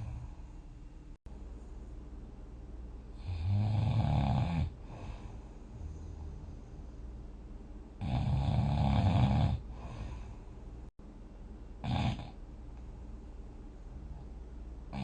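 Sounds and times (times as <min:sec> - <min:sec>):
person snoring: 0:03.2 - 0:06.9, 0:08.0 - 0:10.4, 0:11.8 - 0:12.4.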